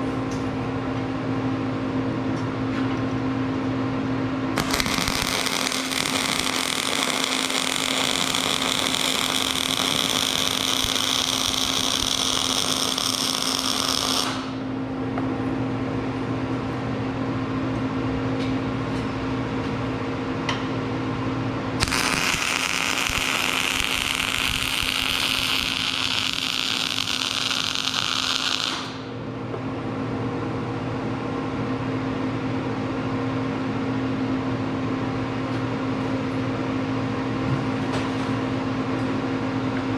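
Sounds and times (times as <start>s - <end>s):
electrical machine hum: 3.2s - 18.0s.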